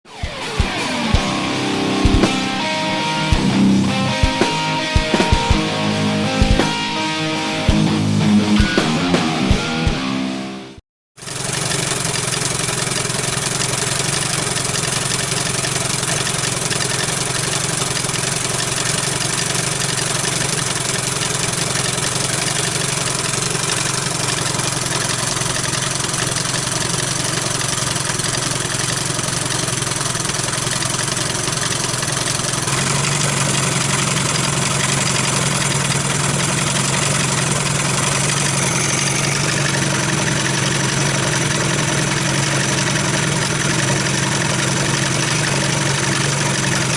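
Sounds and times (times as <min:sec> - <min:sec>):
outboard motor idling: 0:11.2 - 0:46.9.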